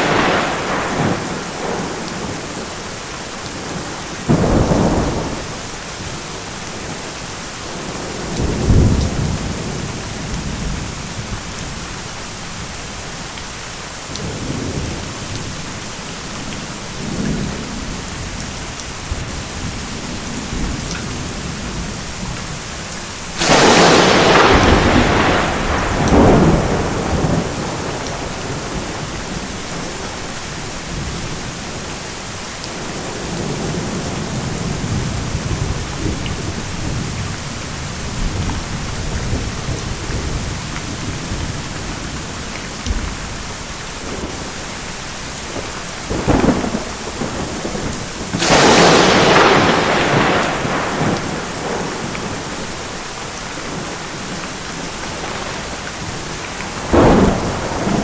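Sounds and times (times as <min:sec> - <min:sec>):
low rolling thunder: 0:00.0 - 0:02.6, 0:03.6 - 0:06.2, 0:07.7 - 0:11.6, 0:23.4 - 0:31.4, 0:32.7 - 0:44.6, 0:45.5 - 0:58.0
steady rain: 0:00.0 - 0:58.0
sharp thunderclaps: 0:03.6 - 0:05.6, 0:23.4 - 0:30.1, 0:42.7 - 0:44.5, 0:45.5 - 0:52.6, 0:55.0 - 0:58.0.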